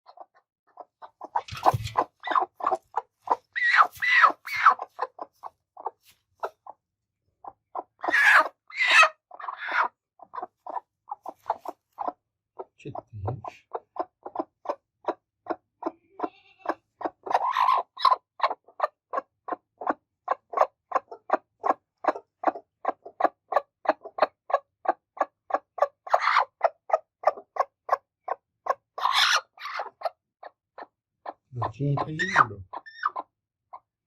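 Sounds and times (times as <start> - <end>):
hen clucking: 0.0 - 34.0
hen squawking: 0.1 - 6.6, 7.7 - 12.2, 15.8 - 22.6, 25.8 - 28.0, 29.0 - 30.1, 31.6 - 33.3.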